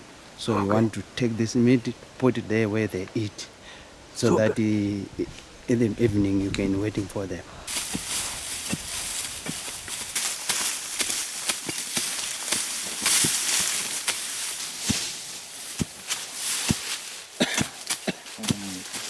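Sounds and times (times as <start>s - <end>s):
rustling in dry bush: 5.1s - 19.0s.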